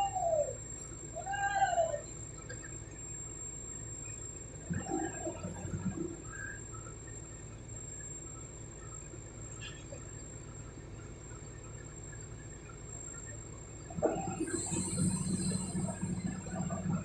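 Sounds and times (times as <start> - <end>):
low engine hum: 1.8 - 17.0.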